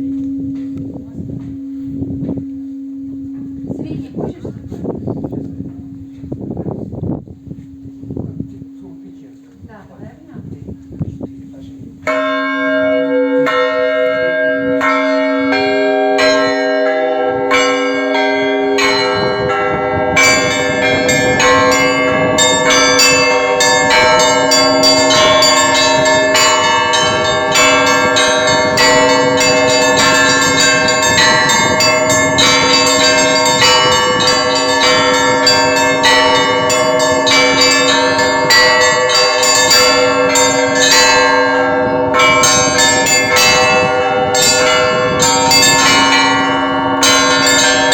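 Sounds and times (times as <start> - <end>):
low bell tone: 0.0 - 47.9
bells struck in quick rhythm: 17.5 - 47.9.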